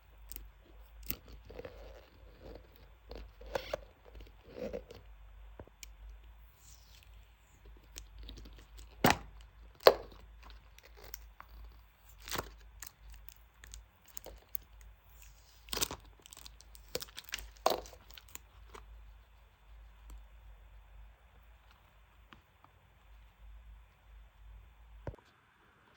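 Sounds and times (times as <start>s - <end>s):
stiff packaging crackling: 7.8s - 18.8s.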